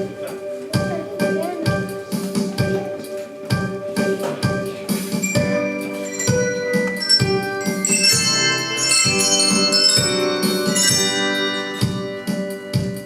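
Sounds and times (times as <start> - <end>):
handbells playing a tune: 4.5 - 13.0.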